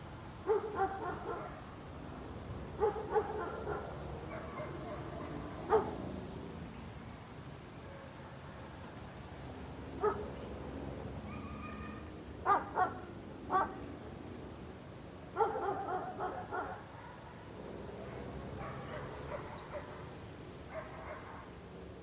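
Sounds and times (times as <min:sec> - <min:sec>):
dog barking: 0:00.4 - 0:01.6, 0:02.8 - 0:06.0, 0:10.0 - 0:10.3, 0:11.3 - 0:13.8, 0:15.4 - 0:20.1, 0:20.7 - 0:21.5
dog yipping and whining: 0:11.3 - 0:12.6.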